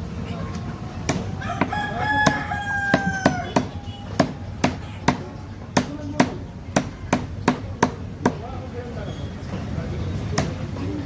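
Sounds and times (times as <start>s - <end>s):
rooster crowing: 1.3s - 4.1s.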